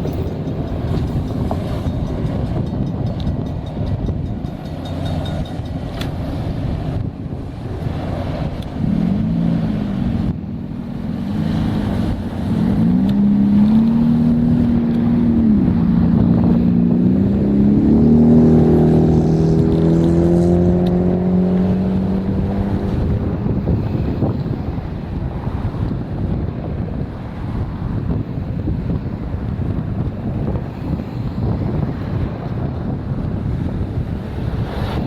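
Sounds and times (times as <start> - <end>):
low rumble of passing train: 0.0 - 20.2.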